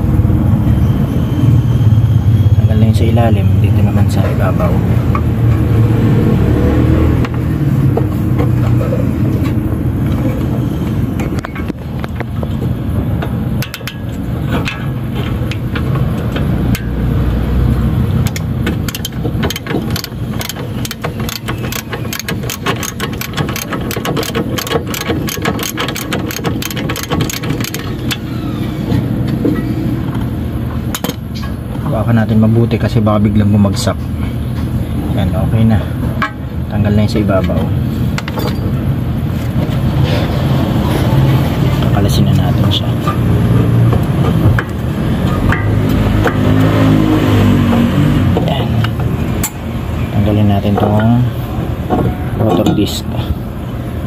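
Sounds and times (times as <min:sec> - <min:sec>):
steady low rumble: 0:00.0 - 0:54.0
ratchet wrench clicking: 0:18.2 - 0:28.3.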